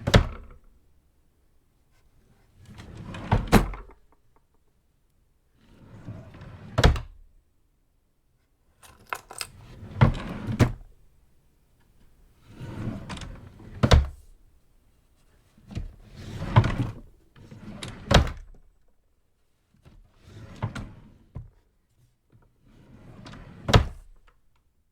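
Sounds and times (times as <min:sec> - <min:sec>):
drawer sliding open and shut: 0:00.0 - 0:00.7, 0:02.5 - 0:04.1, 0:05.6 - 0:07.2, 0:08.8 - 0:10.9, 0:12.4 - 0:14.4, 0:15.6 - 0:18.6, 0:20.2 - 0:21.5, 0:22.6 - 0:24.2.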